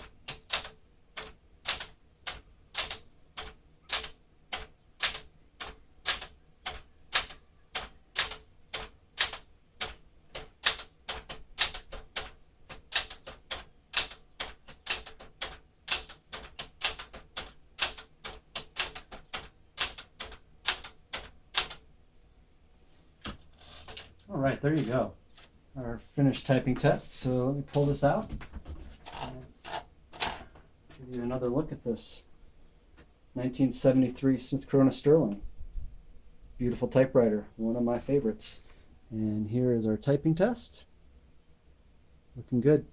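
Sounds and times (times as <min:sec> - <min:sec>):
manual typewriter typebar strikes: 0:00.0 - 0:21.8, 0:23.2 - 0:25.5.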